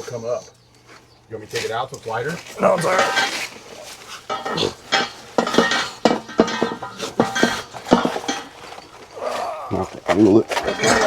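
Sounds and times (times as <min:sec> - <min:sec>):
metal parts clinking and knocking: 0:02.6 - 0:09.2, 0:09.9 - 0:11.0.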